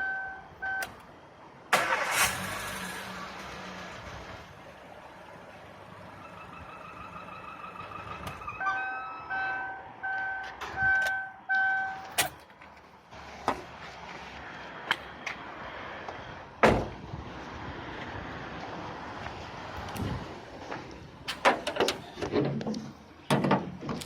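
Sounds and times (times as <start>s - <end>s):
car warning chime beeps: 0.0s - 0.9s, 6.2s - 12.0s
loud thump: 16.6s - 17.0s.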